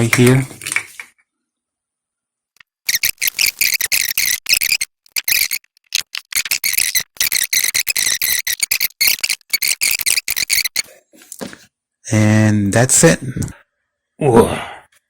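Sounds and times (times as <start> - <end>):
packaging rustling: 0.3 - 1.1.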